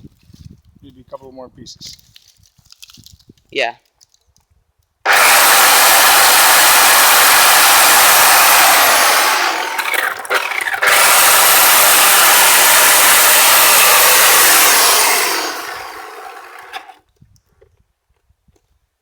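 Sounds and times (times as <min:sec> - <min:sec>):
chainsaw cutting branch: 0:05.1 - 0:17.0.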